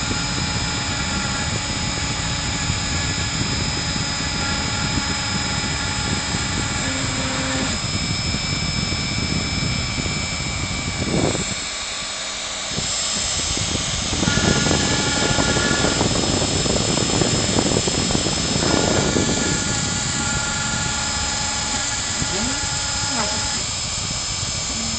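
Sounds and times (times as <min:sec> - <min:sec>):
pitched machine tones: 0:00.0 - 0:24.9
router cutting wood: 0:00.0 - 0:24.9
router spindle whine: 0:00.0 - 0:24.9.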